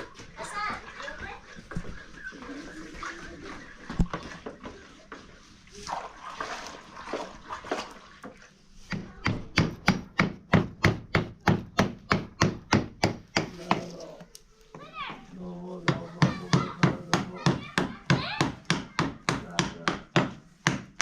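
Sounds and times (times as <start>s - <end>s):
rapid sharp knocks: 8.9s - 13.8s.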